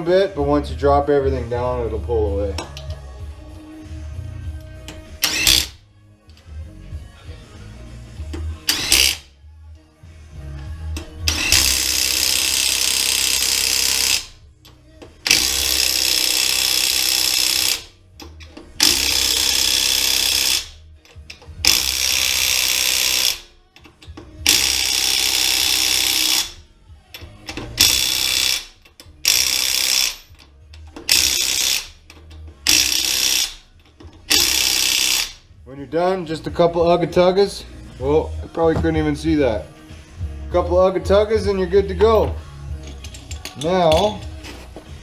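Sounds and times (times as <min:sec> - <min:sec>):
impact wrench bursts: 0:05.2 - 0:05.8, 0:08.6 - 0:09.3, 0:11.3 - 0:14.4, 0:15.2 - 0:18.0, 0:18.8 - 0:20.8, 0:21.6 - 0:23.5, 0:24.4 - 0:26.6, 0:27.6 - 0:30.4, 0:31.0 - 0:35.5.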